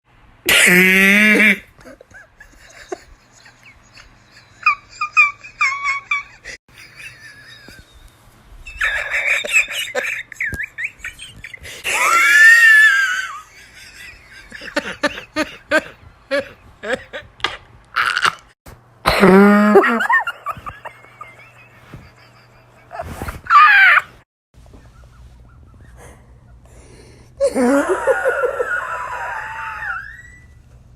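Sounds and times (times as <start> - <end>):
person wheezing laughter: 0.5 - 7.9, 8.7 - 17.4, 19.1 - 24.1, 27.4 - 30.2.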